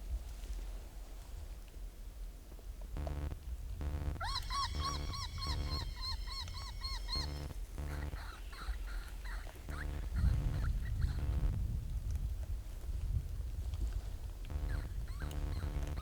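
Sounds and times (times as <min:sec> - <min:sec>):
low buzzing pulses: 0:03.0 - 0:11.7, 0:14.5 - 0:16.0
high yipping calls: 0:03.9 - 0:11.6, 0:14.5 - 0:16.0.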